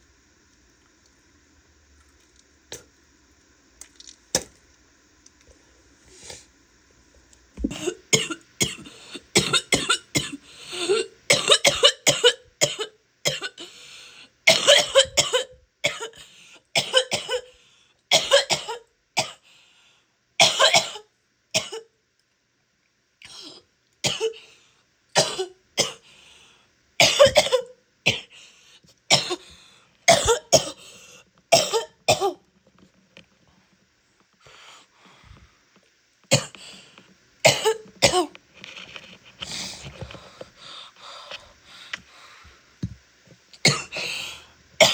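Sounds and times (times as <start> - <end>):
woman coughing wetly: 7.6 - 13.7, 14.5 - 16.2, 16.8 - 17.5, 18.1 - 19.4, 20.4 - 21.9, 23.3 - 24.4, 25.2 - 26.0, 27.0 - 28.3, 29.1 - 29.4, 30.1 - 30.8, 31.5 - 32.4, 37.5 - 38.3, 43.6 - 44.0.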